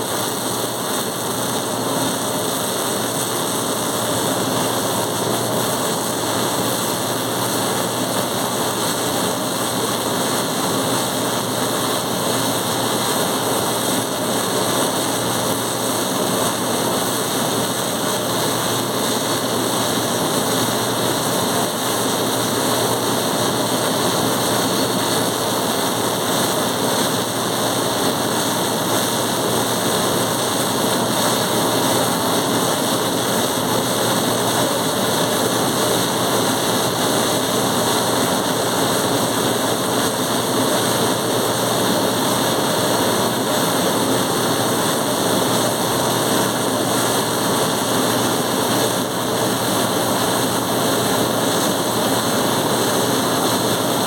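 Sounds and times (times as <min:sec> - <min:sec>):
welding noise: 0:00.0 - 0:54.0.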